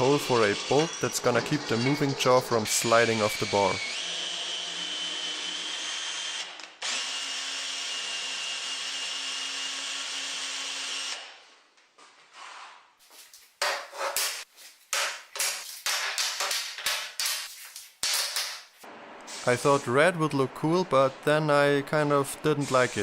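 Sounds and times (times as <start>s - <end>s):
electric drill whining on steel: 0.0s - 11.4s.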